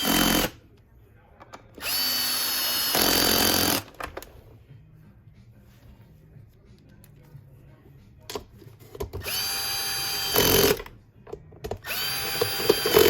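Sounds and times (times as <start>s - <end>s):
cordless drill driving screws: 1.8s - 3.8s, 9.2s - 10.8s, 11.8s - 13.0s.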